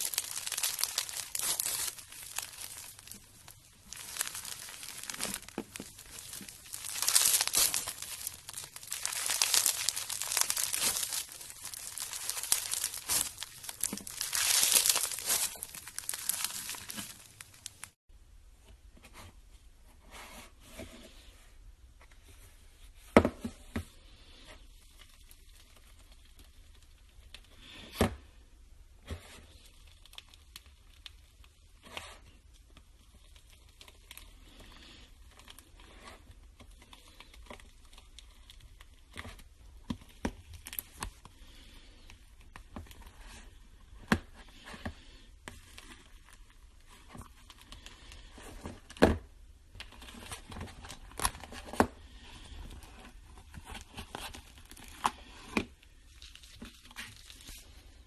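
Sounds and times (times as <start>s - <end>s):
slime handling noise: 0.0s - 18.0s.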